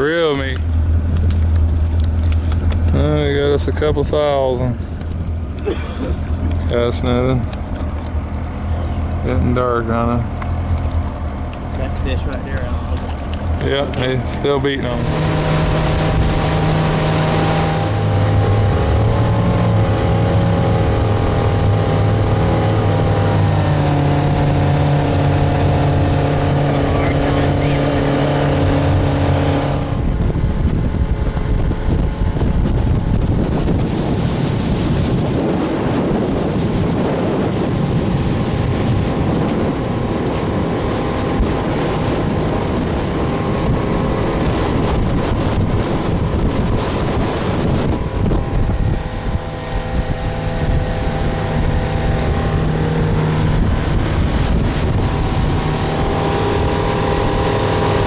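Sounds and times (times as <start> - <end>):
boat engine running: 0.0 - 58.0
rush of wind and water: 0.0 - 58.0.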